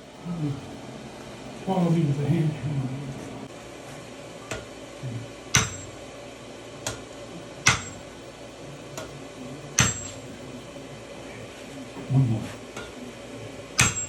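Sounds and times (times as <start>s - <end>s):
hammer striking iron on anvil: 5.5s - 6.0s, 7.6s - 8.1s, 9.8s - 10.2s, 13.8s - 14.0s.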